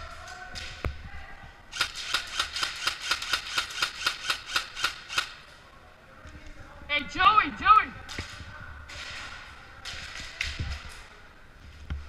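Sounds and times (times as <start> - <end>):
airsoft rifle firing: 1.7 - 5.4.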